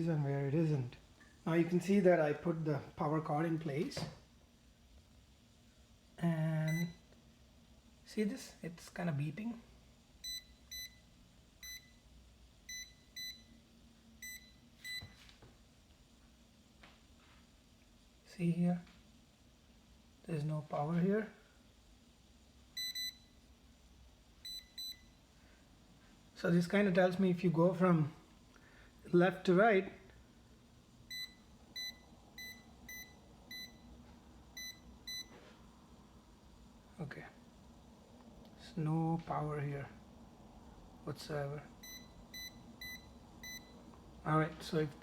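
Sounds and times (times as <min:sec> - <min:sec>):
voltage detector beeping: 0:10.2 - 0:11.0, 0:12.7 - 0:13.6, 0:22.8 - 0:23.3, 0:24.4 - 0:25.1, 0:31.1 - 0:33.8, 0:34.6 - 0:35.3, 0:41.8 - 0:43.8.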